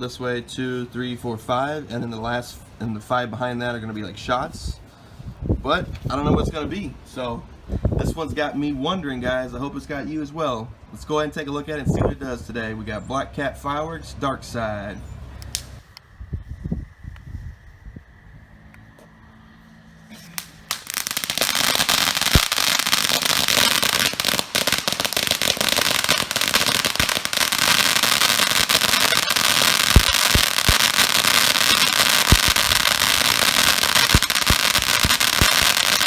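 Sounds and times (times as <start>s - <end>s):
firework crackling: 20.1s - 36.0s
firework fountain hissing: 20.2s - 36.0s
sharp firework pops: 20.2s - 36.0s.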